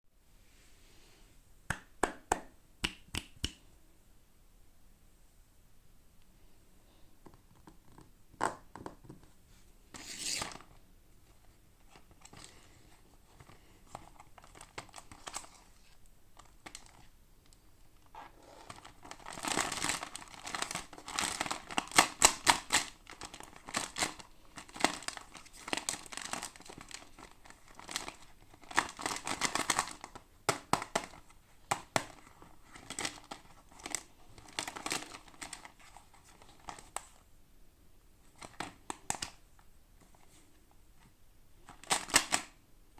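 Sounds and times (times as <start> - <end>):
packaging tearing and crinkling: 18.6 - 31.2.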